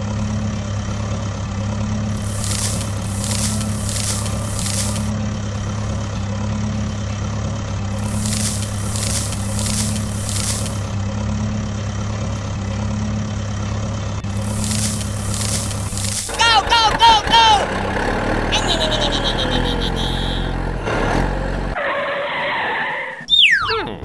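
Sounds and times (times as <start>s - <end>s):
hissing swish: 2.1s - 5.1s, 8.0s - 11.0s, 14.3s - 16.6s.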